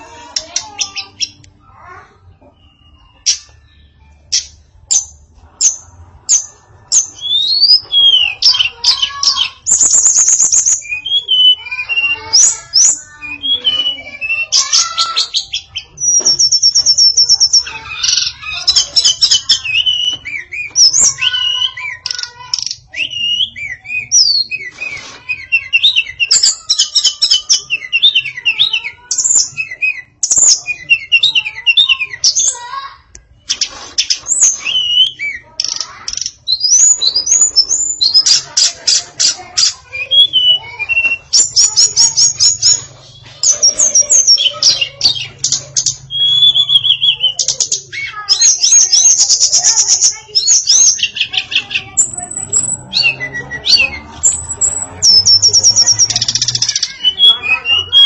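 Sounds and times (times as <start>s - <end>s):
songbird singing: 34.0s - 58.0s.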